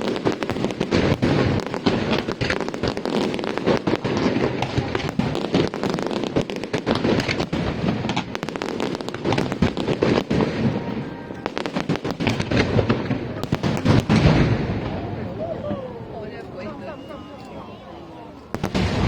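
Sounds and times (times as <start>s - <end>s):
fireworks bangs and crackles: 0.0s - 17.2s, 18.5s - 19.0s.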